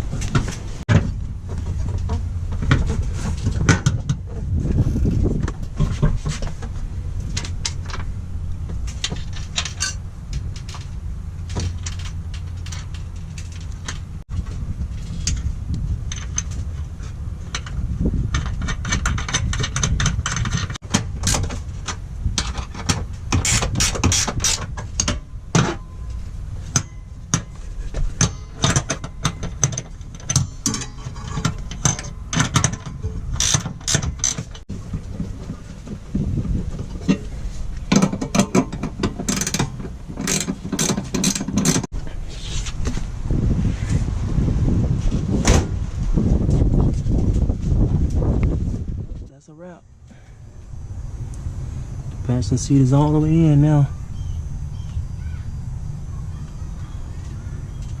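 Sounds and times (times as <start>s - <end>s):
ratchet wrench clicking: 33.4s - 34.4s.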